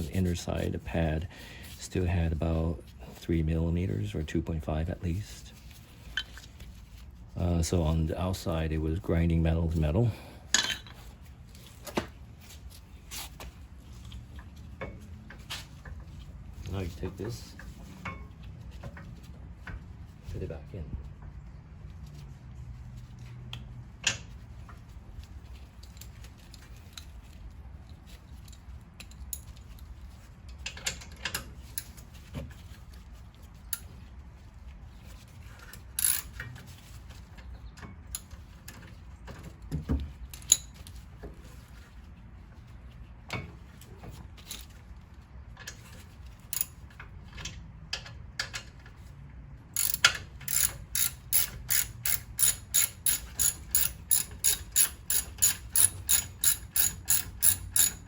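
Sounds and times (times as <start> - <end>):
ratchet wrench clicking: 36.0 - 36.4, 46.5 - 46.7, 49.8 - 58.0
metal tools clinking: 49.8 - 58.0.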